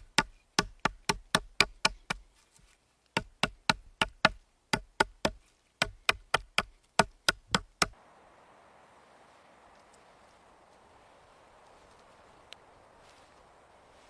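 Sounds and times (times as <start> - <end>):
sharp even knocks: 5.8 - 8.0.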